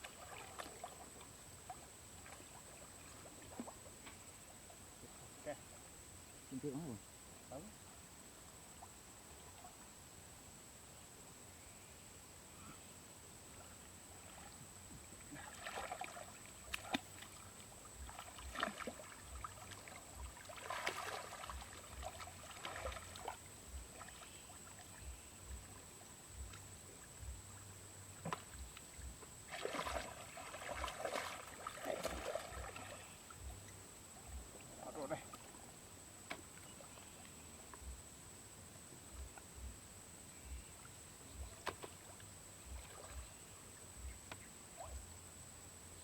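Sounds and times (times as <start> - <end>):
water splashing and sloshing: 0.0 - 5.9, 13.4 - 38.0, 40.8 - 45.2.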